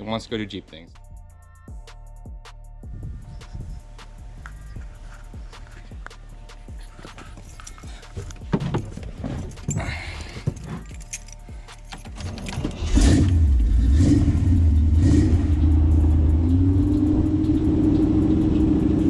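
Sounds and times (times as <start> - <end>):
car engine starting and running: 3.2 - 19.0
keys jangling: 6.7 - 15.2.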